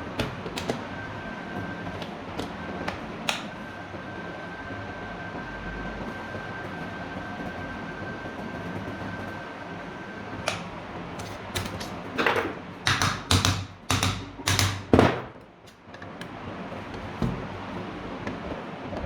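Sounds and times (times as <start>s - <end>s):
loud hard knocks and clatters: 12.3s - 15.4s.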